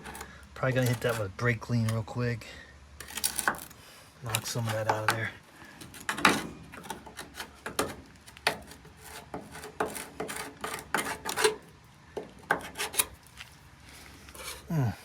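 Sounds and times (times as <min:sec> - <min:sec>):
hand tool scraping and knocking: 0:00.0 - 0:02.0, 0:03.0 - 0:13.2, 0:14.3 - 0:14.7.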